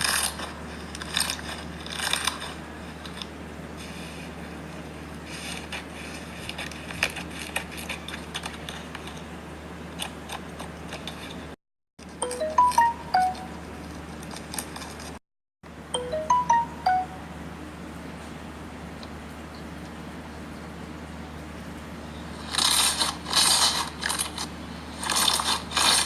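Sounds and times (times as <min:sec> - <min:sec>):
short chime jingle: 0:12.2 - 0:13.6, 0:16.0 - 0:17.4.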